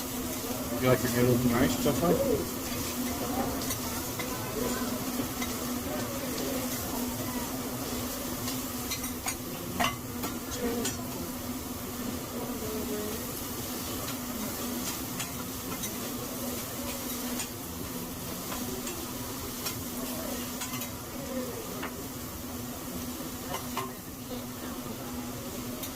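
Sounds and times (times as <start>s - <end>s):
food sizzling on a griddle: 0.0s - 25.9s.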